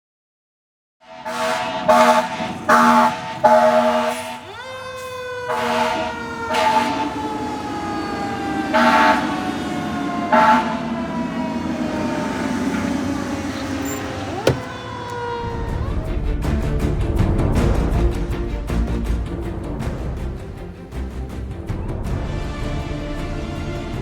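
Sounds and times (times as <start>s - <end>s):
fire truck air horns blasting: 1.0s - 15.5s
siren wailing: 3.5s - 15.9s.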